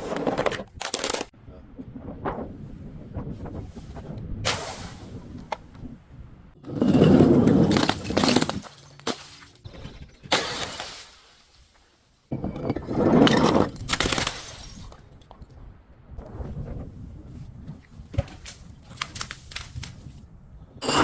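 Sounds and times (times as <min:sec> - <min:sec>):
glass crunches and clicks: 0:00.4 - 0:01.3, 0:06.9 - 0:09.1, 0:12.5 - 0:15.0
glass bottles shattering: 0:06.8 - 0:11.2, 0:12.4 - 0:15.0.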